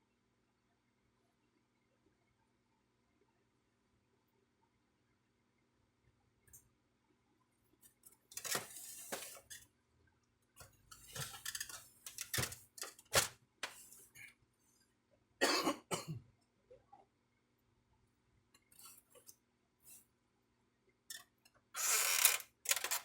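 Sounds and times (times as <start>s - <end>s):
plastic printer parts clicking: 8.3s - 9.6s, 10.6s - 13.8s, 22.2s - 23.0s.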